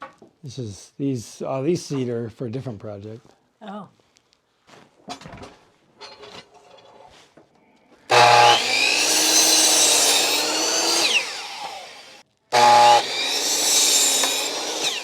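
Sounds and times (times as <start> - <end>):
electric saw cutting wood: 8.1 - 15.0.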